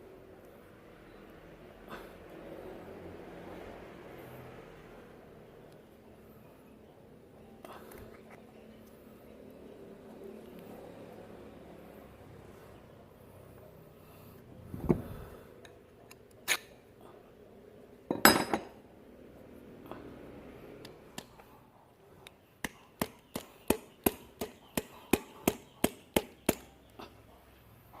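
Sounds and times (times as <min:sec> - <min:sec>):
metal tools clinking and knocking: 0:18.1 - 0:18.8.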